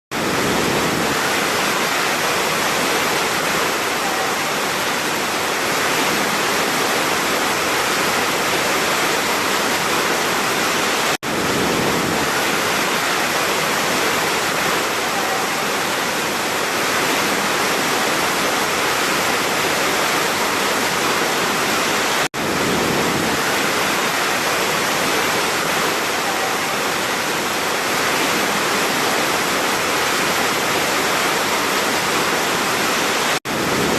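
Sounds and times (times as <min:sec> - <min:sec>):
waterfall roaring: 0:00.1 - 0:33.9.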